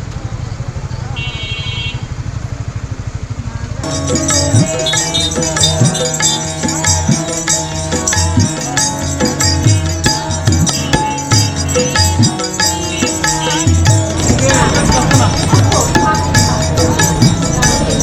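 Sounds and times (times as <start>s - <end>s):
motorcycle engine idling: 0.0s - 18.0s
folk music with tabla: 3.8s - 18.0s.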